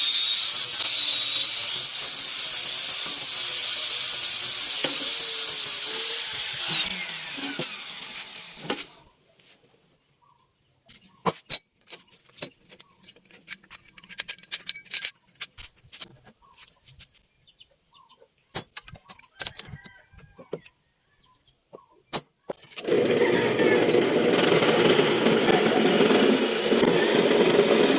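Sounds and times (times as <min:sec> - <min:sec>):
power tool whining and winding down: 0:00.0 - 0:09.0, 0:22.7 - 0:27.9
metal parts clicking and tapping: 0:10.9 - 0:17.2, 0:18.6 - 0:20.0.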